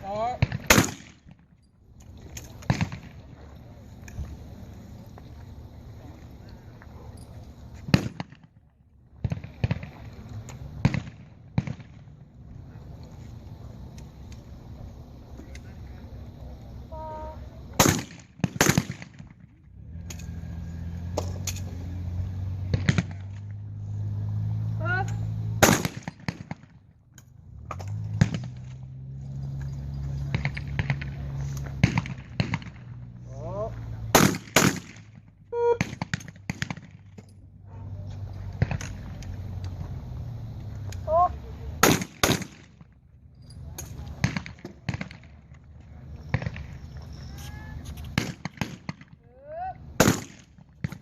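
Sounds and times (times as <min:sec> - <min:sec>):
steady low hum: 0:00.0 - 0:51.0
shotgun shots: 0:00.3 - 0:01.4, 0:02.6 - 0:03.2, 0:07.9 - 0:08.5, 0:10.8 - 0:12.1, 0:17.8 - 0:19.4, 0:25.6 - 0:26.7, 0:31.8 - 0:32.9, 0:34.1 - 0:37.0, 0:41.8 - 0:42.9, 0:44.2 - 0:45.4, 0:48.2 - 0:49.2, 0:50.0 - 0:51.0
person shouting: 0:35.6 - 0:35.8.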